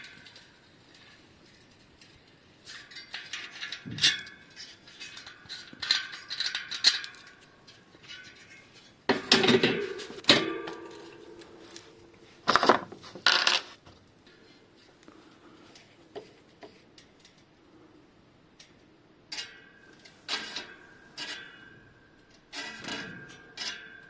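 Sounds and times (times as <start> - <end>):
bicycle parts clinking: 0.0 - 14.4, 18.6 - 24.0.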